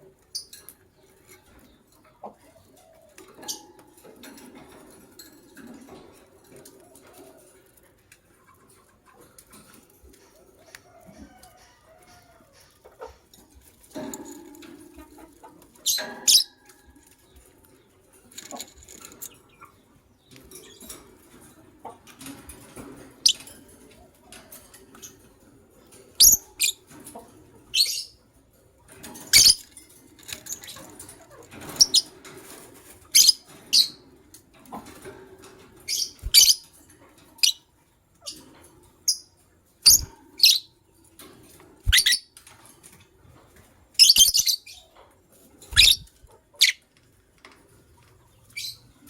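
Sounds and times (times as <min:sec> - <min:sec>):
lovebirds shrill chirps: 0:26.2 - 0:26.8, 0:35.9 - 0:36.6, 0:39.9 - 0:40.7, 0:41.9 - 0:42.3, 0:44.0 - 0:44.9, 0:45.8 - 0:46.8.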